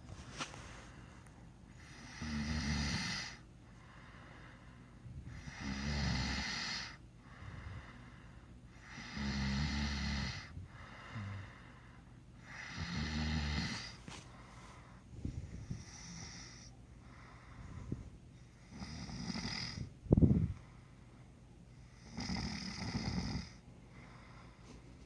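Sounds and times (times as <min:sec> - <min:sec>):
quiet breathing: 0:00.0 - 0:25.0
man snoring: 0:01.8 - 0:03.4, 0:05.4 - 0:07.0, 0:08.8 - 0:11.6, 0:12.5 - 0:14.0, 0:15.8 - 0:16.6, 0:18.6 - 0:19.9, 0:22.0 - 0:23.6.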